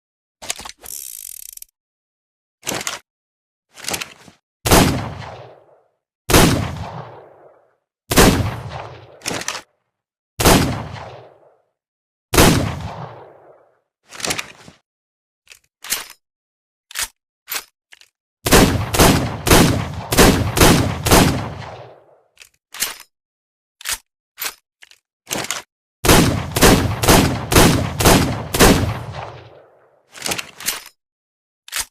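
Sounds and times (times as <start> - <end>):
gun mechanical clicks: 0.4 - 1.7, 9.2 - 9.7, 16.9 - 18.6, 23.8 - 25.7, 30.1 - 31.0, 31.7 - 31.9
revolver gunshots with echo: 4.7 - 9.2, 10.4 - 11.6, 12.4 - 13.6, 18.5 - 22.2, 26.0 - 29.9.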